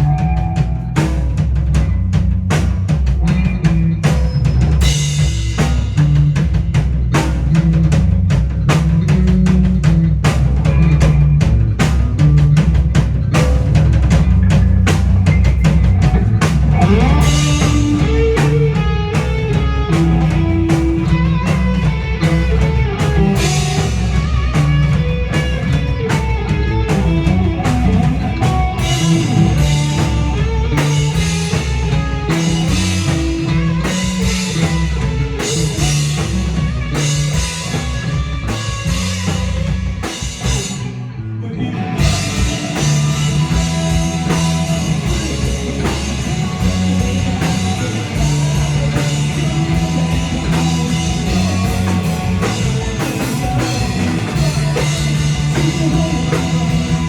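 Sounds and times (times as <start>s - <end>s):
drum kit beating: 0.0s - 41.1s, 41.9s - 57.0s
heavy bass: 0.0s - 57.0s
rock band playing: 0.0s - 57.0s
guitar melody: 15.3s - 57.0s.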